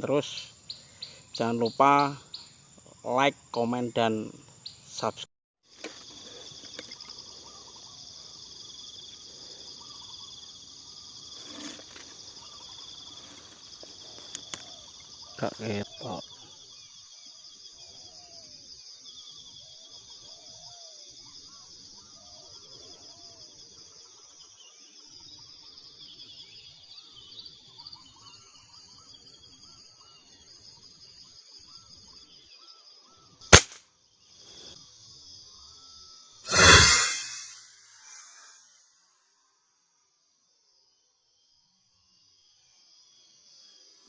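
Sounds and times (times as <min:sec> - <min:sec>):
faint bird chirps: 0:00.0 - 0:05.3, 0:05.9 - 0:39.7
insects buzzing: 0:00.0 - 0:44.0
air rifle shot: 0:33.5 - 0:33.8, 0:36.5 - 0:37.7
loud noisy burst: 0:36.5 - 0:38.4.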